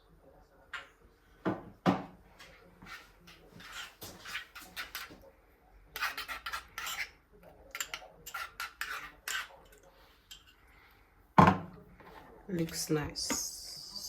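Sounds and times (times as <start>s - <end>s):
utensils clinking and scraping dishes: 2.8s - 5.2s, 6.0s - 10.8s.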